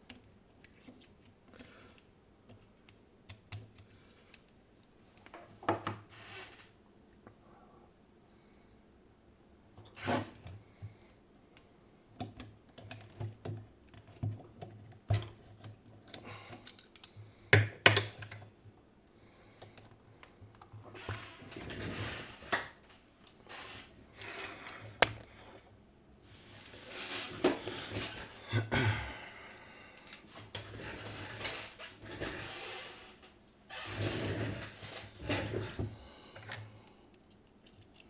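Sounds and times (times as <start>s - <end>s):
scraping and rustling: 20.9s - 25.0s, 26.3s - 28.4s, 30.3s - 35.9s.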